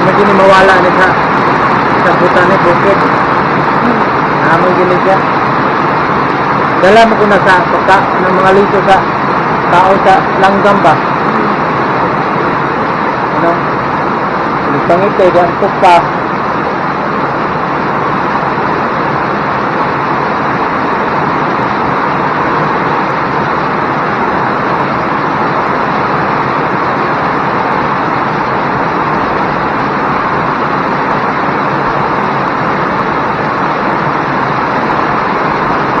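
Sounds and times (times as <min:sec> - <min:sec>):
heavy rain falling: 0:00.0 - 0:36.0.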